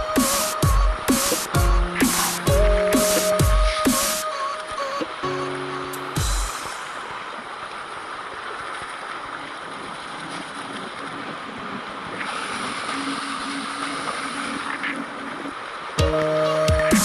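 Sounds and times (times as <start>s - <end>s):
water hissing under kiteboard: 0.0s - 5.2s, 6.0s - 7.4s, 11.5s - 16.0s.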